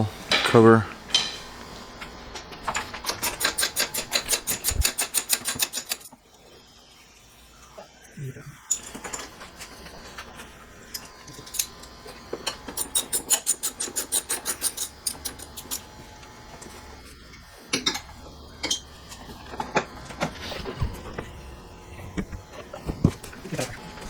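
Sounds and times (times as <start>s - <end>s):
tools clinking and knocking: 0.3s - 1.5s
ratchet wrench clicking: 3.1s - 6.1s, 12.8s - 15.9s.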